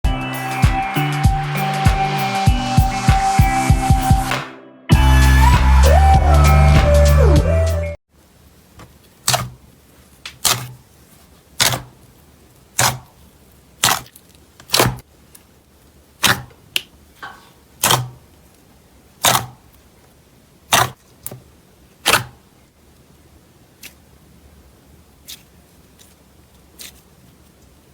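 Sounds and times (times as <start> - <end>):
intro music: 0.0 - 8.0
slime popping and crackling: 9.2 - 9.6, 10.2 - 10.8, 11.6 - 12.0, 12.7 - 13.2, 13.8 - 15.1, 17.8 - 18.2, 19.2 - 19.7.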